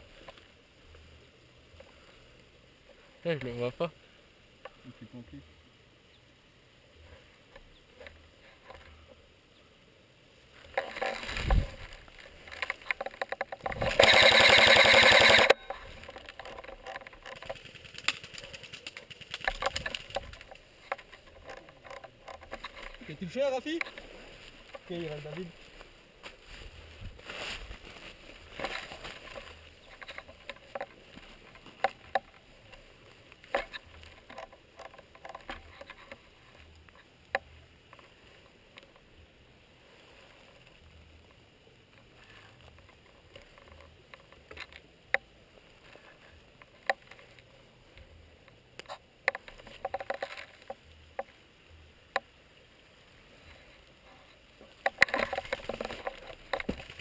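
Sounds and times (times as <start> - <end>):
clothing and gear rustling: 10.5 - 36.8, 53.1 - 57.0.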